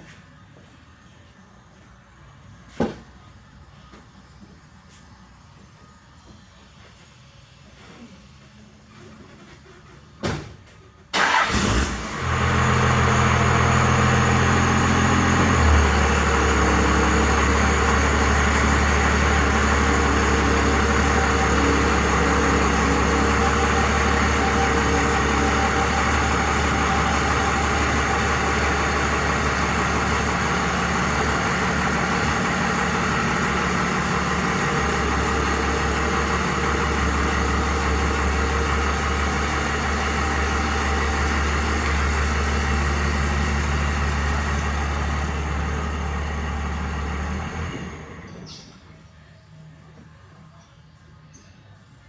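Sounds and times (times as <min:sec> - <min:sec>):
lift motor running: 0:11.2 - 0:48.4.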